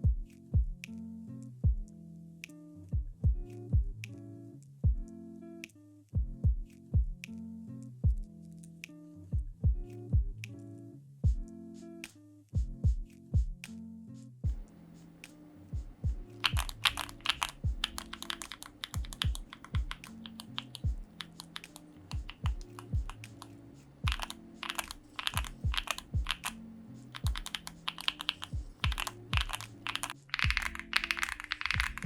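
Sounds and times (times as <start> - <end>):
soft background music: 0.0 - 32.0
mechanical keyboard typing: 14.5 - 32.0.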